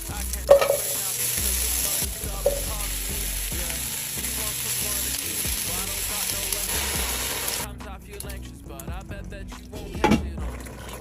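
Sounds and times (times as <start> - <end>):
food sizzling in a pan: 0.0 - 7.7
pop music with bass: 0.0 - 11.0.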